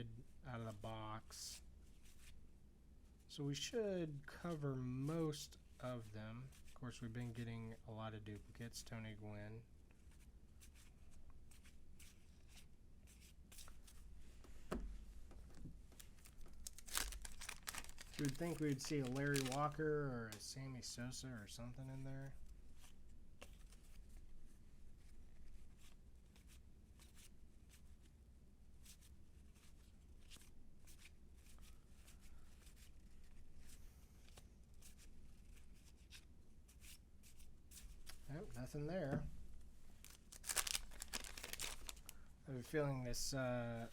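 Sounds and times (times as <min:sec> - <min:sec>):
cards swishing while flipped: 0:10.1 - 0:14.0.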